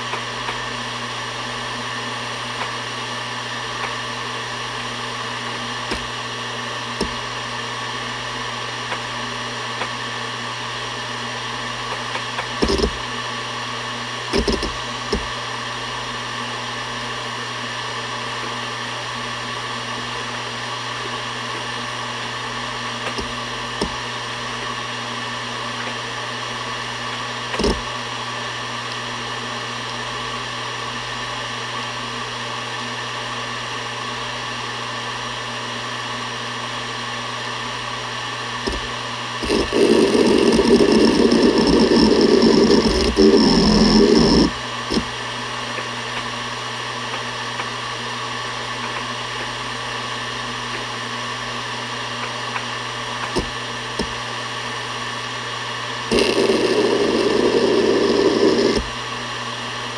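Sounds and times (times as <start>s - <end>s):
hard drive spinning hum: 0.0s - 31.3s, 37.6s - 59.9s
hard drive heads seeking knocks: 5.9s - 6.1s, 12.5s - 13.0s, 14.3s - 15.3s, 27.6s - 27.9s, 38.7s - 45.1s.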